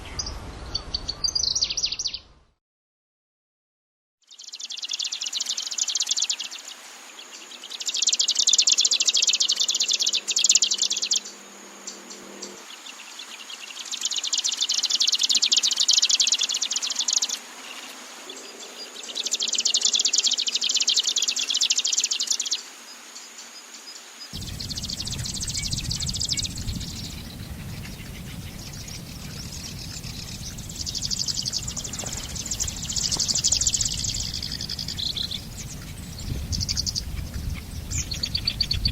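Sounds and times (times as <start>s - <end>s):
low background rumble: 24.4s - 38.9s.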